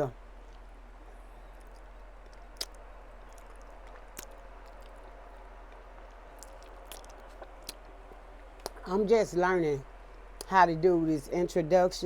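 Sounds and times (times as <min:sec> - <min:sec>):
steady low hum: 0:00.0 - 0:12.0
chewing and mouth sounds: 0:00.3 - 0:08.9.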